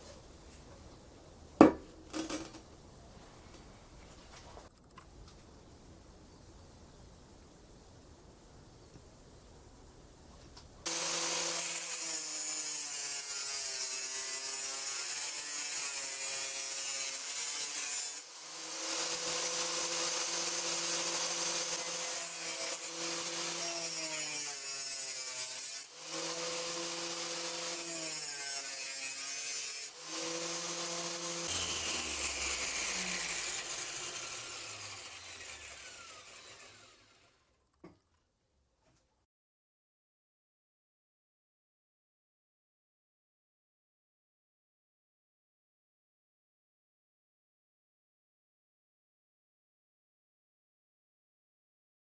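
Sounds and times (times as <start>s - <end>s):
angle grinder cutting: 10.9s - 37.5s
grinder winding down whine: 31.2s - 37.5s.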